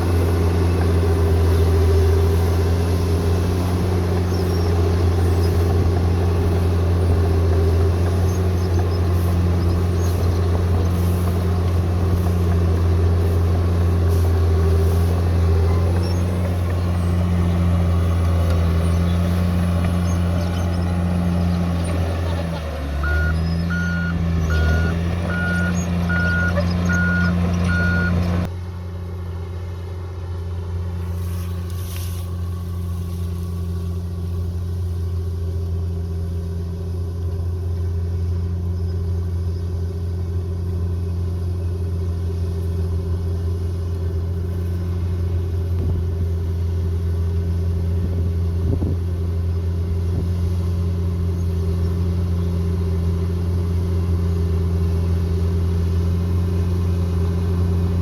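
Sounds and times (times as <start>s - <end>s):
diesel engine droning: 0.0s - 58.0s
reversing alarm beeping: 23.0s - 28.3s.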